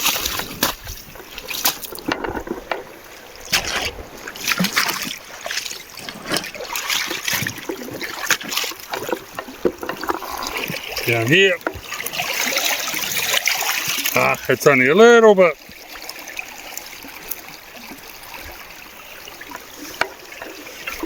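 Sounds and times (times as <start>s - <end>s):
footsteps on wet stones: 0.0s - 12.1s
water splashing and sloshing: 0.0s - 21.0s.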